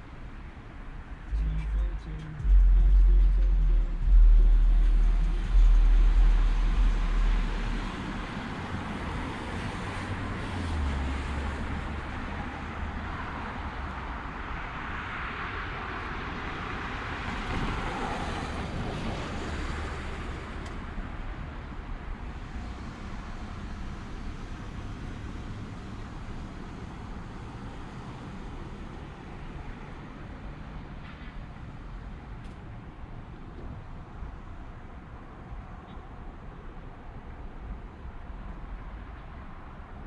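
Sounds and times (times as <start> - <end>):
distant traffic hum: 0.0 - 40.0
loud deep rumble: 1.3 - 9.1
vehicle tyre noise: 2.4 - 12.8.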